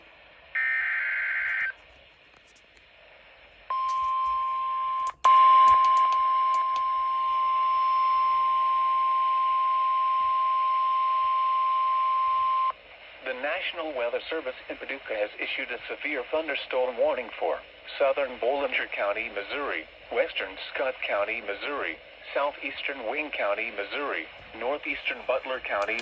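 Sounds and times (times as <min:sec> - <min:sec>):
clicks: 0:05.0 - 0:06.9, 0:25.5 - 0:26.0.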